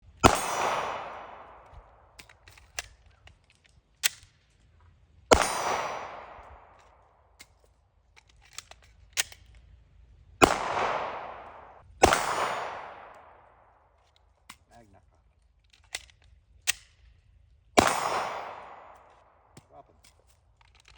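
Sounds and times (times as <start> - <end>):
pistol shots with echo: 0.2 - 2.2, 5.3 - 7.2, 10.4 - 13.8, 17.8 - 19.8
magazine change clicks: 0.2 - 4.4, 5.3 - 9.7, 10.4 - 14.8, 15.4 - 17.2, 17.8 - 20.9.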